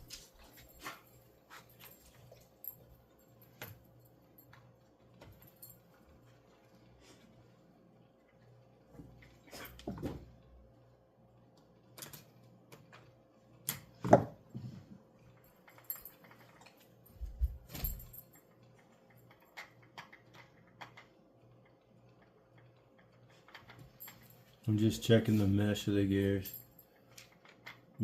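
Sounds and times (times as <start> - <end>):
faint steady hum: 0.0 - 28.0
small parts and tools clicking: 15.2 - 24.6, 26.0 - 28.0.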